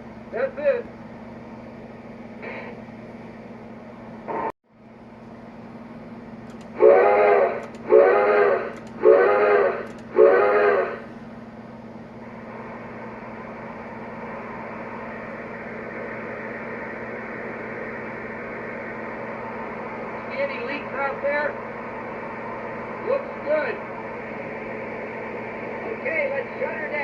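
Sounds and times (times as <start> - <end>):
low hum: 0.0 - 27.0
steam whistle blasts: 6.8 - 11.0.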